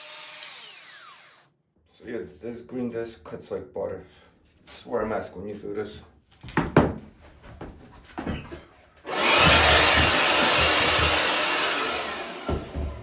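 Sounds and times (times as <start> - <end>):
angle grinder cutting: 0.0 - 1.5, 9.1 - 12.8.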